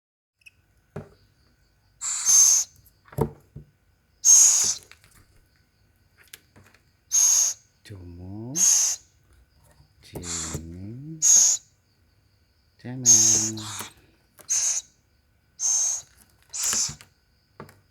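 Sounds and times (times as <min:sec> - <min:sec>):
owls hissing screeches: 0:02.0 - 0:02.7, 0:04.2 - 0:04.9, 0:07.1 - 0:07.6, 0:08.5 - 0:09.1, 0:10.2 - 0:11.7, 0:13.0 - 0:15.0, 0:15.6 - 0:17.0.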